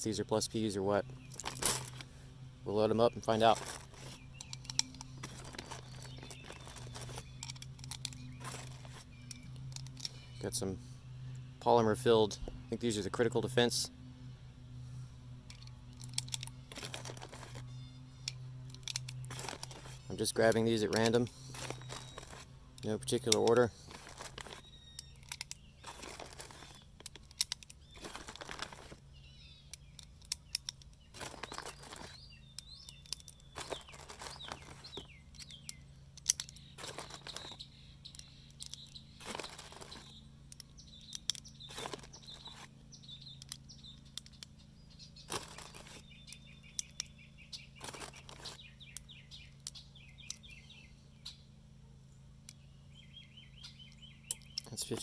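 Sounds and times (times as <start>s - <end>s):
birds chirping: 0.0s - 55.0s
cartridges clicking into magazine: 20.9s - 28.9s, 35.3s - 42.5s.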